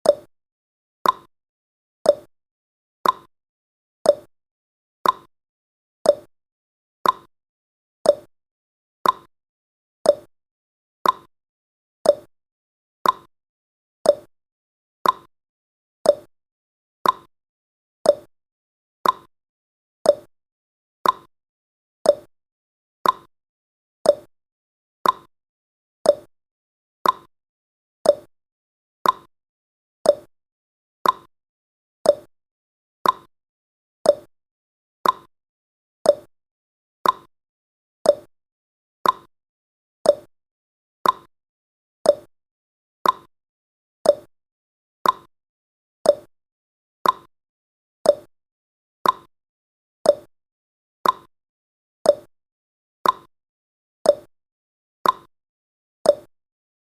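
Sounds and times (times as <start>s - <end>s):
countdown timer ticking: 32.1s - 32.3s, 34.1s - 34.3s, 36.1s - 36.3s, 38.1s - 38.3s, 40.1s - 40.3s, 41.0s - 41.3s, 42.1s - 42.3s, 44.1s - 44.3s, 46.1s - 46.3s, 50.1s - 50.3s.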